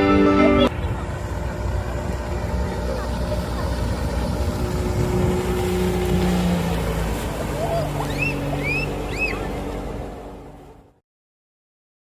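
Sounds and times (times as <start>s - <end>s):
faint distant voices: 0.4s - 9.8s
wind buffeting microphone: 0.7s - 10.4s.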